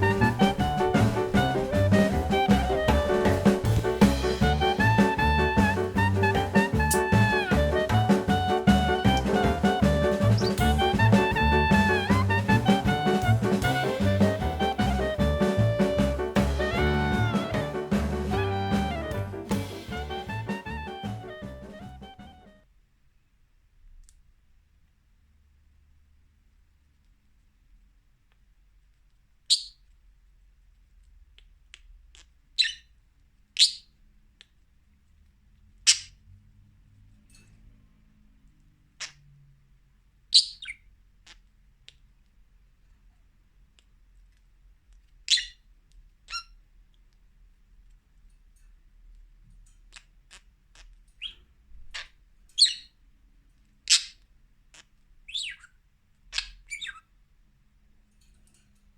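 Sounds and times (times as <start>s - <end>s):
budgerigar chirps: 10.3s - 12.2s, 29.5s - 29.8s, 32.6s - 32.9s, 33.6s - 33.9s, 40.3s - 40.8s, 45.3s - 45.6s, 52.0s - 53.0s, 53.9s - 54.2s, 54.8s - 57.1s.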